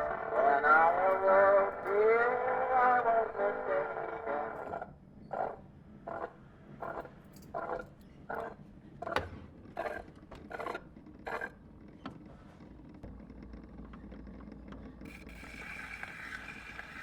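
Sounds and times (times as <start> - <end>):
gramophone crank rasping: 15.1 - 17.0.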